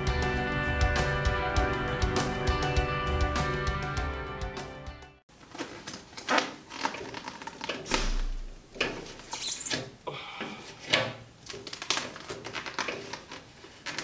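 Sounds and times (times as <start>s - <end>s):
vinyl film rustling and crinkling: 5.3s - 9.9s, 10.7s - 14.0s.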